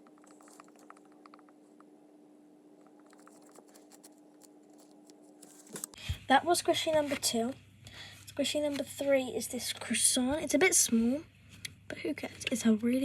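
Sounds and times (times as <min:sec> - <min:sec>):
faint ticks: 0:00.0 - 0:01.9
low steady hum: 0:00.0 - 0:13.0.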